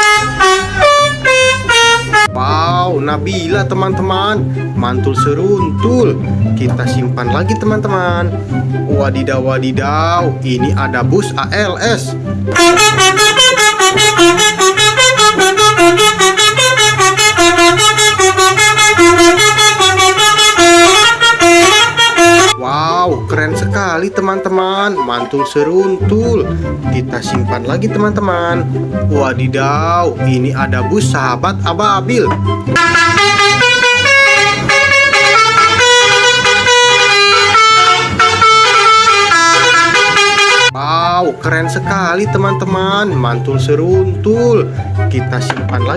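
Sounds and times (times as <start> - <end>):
multi-tone bus horn tune: 0.0 - 2.4, 12.5 - 22.6, 32.7 - 40.8.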